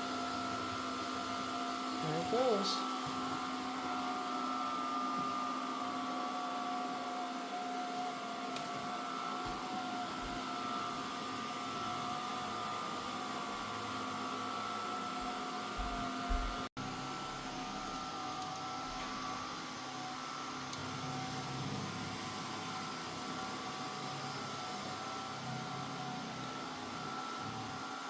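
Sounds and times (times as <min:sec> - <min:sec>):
robot vacuum motor hum: 0:00.0 - 0:28.0.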